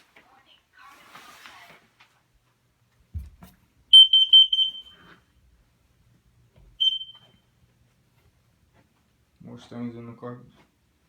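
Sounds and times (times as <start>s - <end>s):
dull thump: 3.1s - 3.6s
smoke alarm shrill beeps: 3.9s - 5.1s, 6.8s - 7.4s.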